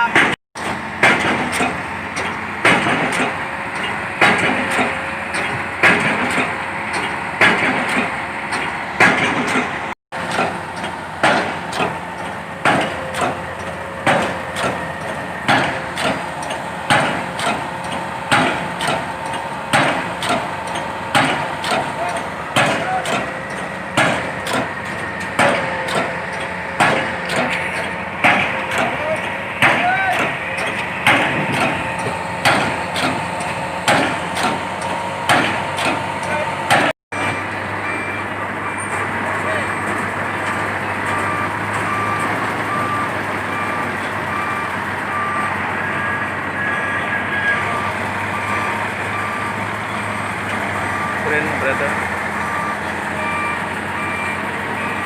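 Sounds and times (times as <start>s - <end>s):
heavy machinery running: 0.0s - 55.0s
hammer blows ringing: 15.4s - 37.6s
warning alarm beeping: 41.0s - 55.0s.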